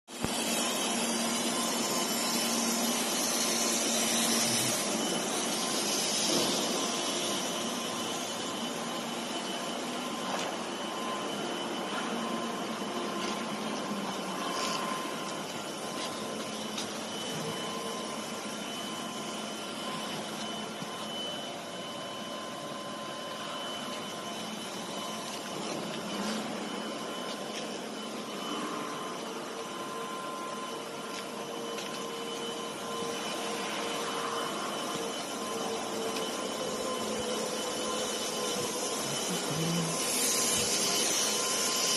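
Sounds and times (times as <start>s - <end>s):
laser cutting hiss: 0.1s - 8.5s, 36.2s - 41.9s
faint machine whines: 0.1s - 41.9s
low machine whine: 0.1s - 41.9s.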